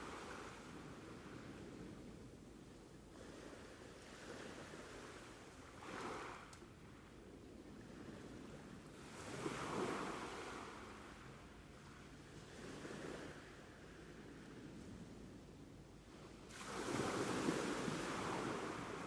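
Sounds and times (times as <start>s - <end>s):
ocean waves washing ashore: 0.0s - 2.2s, 3.1s - 6.5s, 7.8s - 14.7s, 16.4s - 19.0s.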